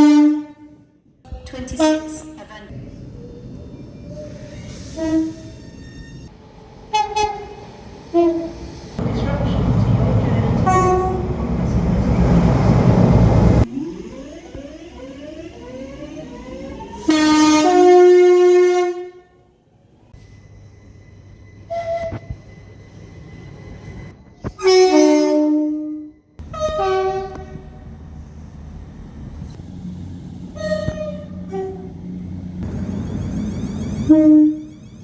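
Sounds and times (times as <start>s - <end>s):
short train horn toot: 0.0s - 0.8s, 4.9s - 5.6s, 6.9s - 7.6s, 10.6s - 11.4s, 17.0s - 19.4s, 24.4s - 27.7s, 30.6s - 31.9s, 33.2s - 35.0s
two-tone train horn blast: 0.0s - 0.9s, 4.9s - 5.6s, 6.9s - 9.6s, 10.2s - 11.5s, 17.0s - 19.5s, 24.4s - 27.8s, 30.5s - 35.0s
loud train running noise: 1.5s - 18.8s, 26.4s - 35.0s.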